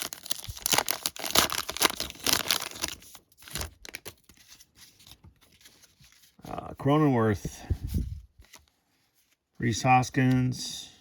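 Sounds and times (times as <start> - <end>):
plastic wrapper tearing and crinkling: 0.0 - 4.4
cards rustling and clicking: 0.0 - 6.4.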